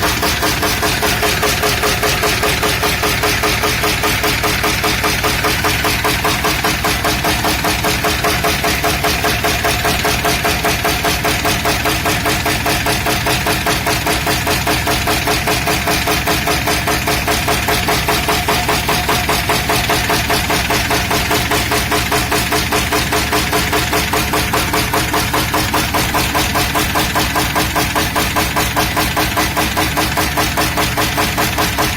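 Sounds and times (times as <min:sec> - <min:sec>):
engine idling with rhythmic knock: 0:00.0 - 0:31.9.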